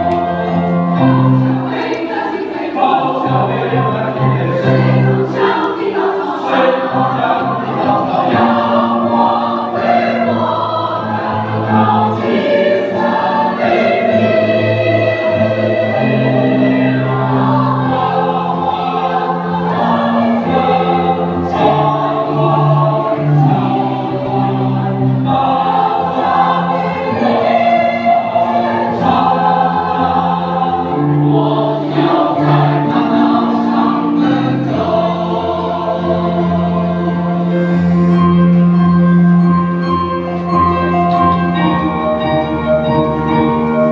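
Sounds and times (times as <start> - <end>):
choir singing: 0.0 - 43.9.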